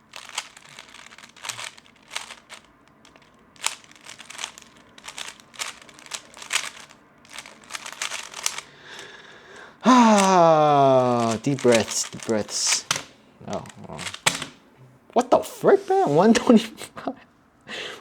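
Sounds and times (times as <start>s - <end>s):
plastic cube puzzle clicking: 0.1s - 9.1s, 10.1s - 14.6s.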